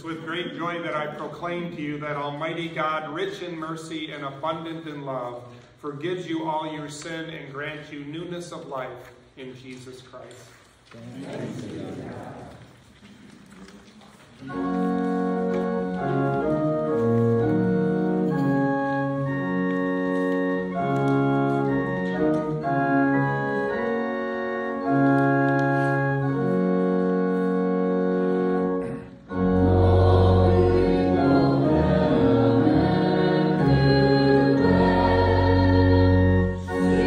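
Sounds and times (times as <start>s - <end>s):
church organ chords: 14.4s - 37.0s
congregation singing: 14.4s - 37.0s.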